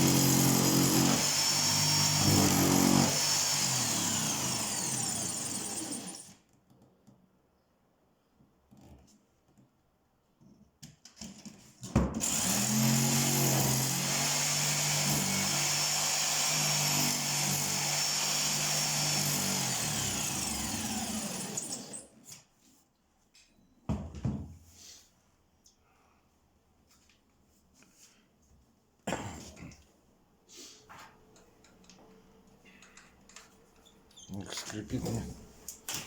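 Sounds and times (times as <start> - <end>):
power drill running: 0.0 - 6.4, 12.2 - 22.1.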